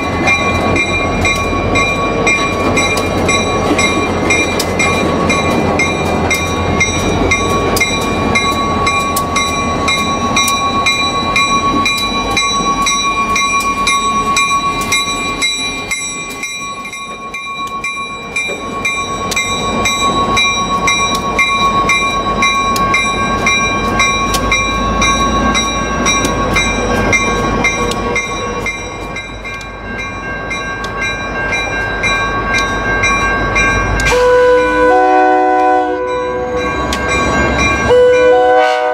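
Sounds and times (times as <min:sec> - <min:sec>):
train running on rails: 0:00.0 - 0:38.9
steady clicking: 0:00.2 - 0:18.6, 0:19.2 - 0:29.8
train horn: 0:34.1 - 0:36.6, 0:37.9 - 0:38.9.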